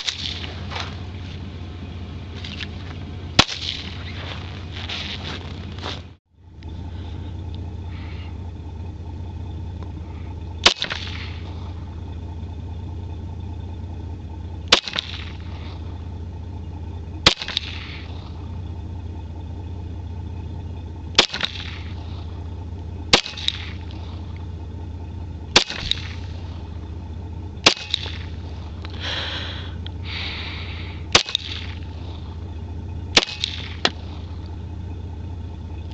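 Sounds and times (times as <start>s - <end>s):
low hum: 0.0s - 35.9s
handgun shots with echo: 10.6s - 11.3s, 27.6s - 28.2s, 31.1s - 31.7s, 33.2s - 34.0s.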